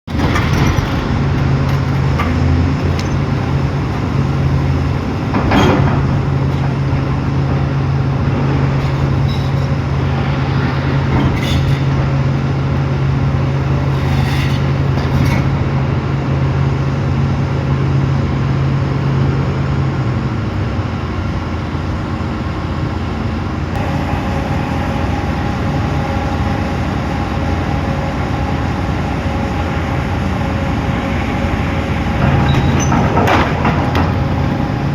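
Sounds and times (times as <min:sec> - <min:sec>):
excavator diesel engine running: 0:00.1 - 0:34.9
high steady whine: 0:20.2 - 0:34.9.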